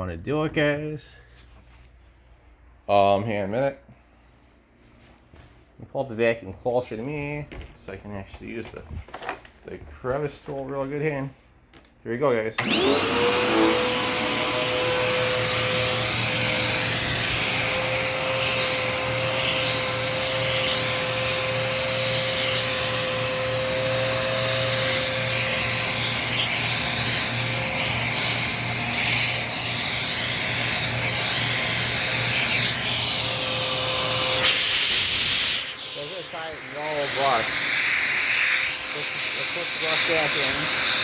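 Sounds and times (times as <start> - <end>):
vacuum cleaner on upholstery: 12.6 - 41.0.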